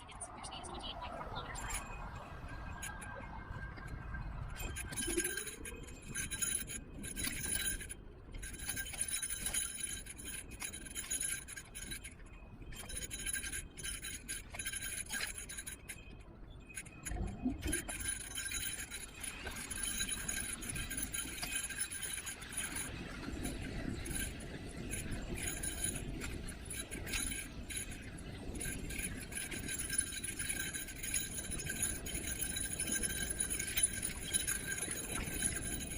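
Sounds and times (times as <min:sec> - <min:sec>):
low road rumble: 0:00.0 - 0:35.9
scooter rattling and clinking: 0:00.8 - 0:35.9.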